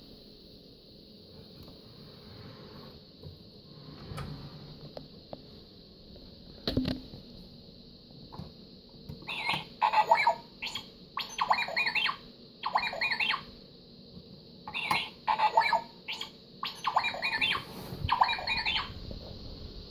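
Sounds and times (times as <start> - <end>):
toy electronic chirps and beeps: 9.2 - 13.5, 14.7 - 19.0.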